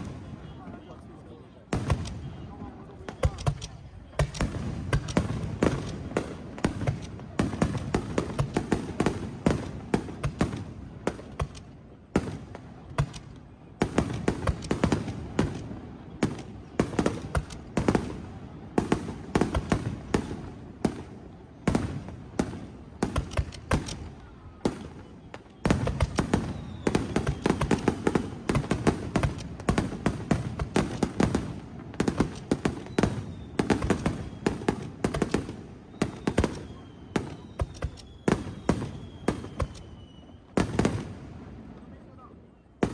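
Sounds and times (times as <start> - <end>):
fireworks bangs and crackling: 0.0 - 42.9
whistles from rising shells: 26.4 - 27.9, 35.9 - 40.6.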